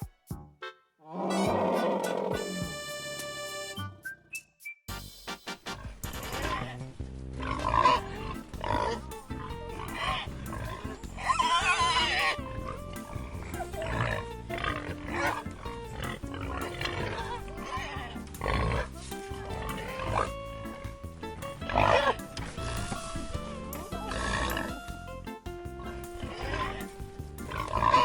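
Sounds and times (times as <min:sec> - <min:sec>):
background music: 0:00.0 - 0:28.0
animal grunting calls: 0:01.0 - 0:02.7, 0:05.7 - 0:24.8, 0:25.8 - 0:28.0
animal high cry: 0:01.1 - 0:02.7, 0:07.4 - 0:20.9, 0:21.6 - 0:23.0, 0:23.9 - 0:24.8, 0:25.8 - 0:28.0.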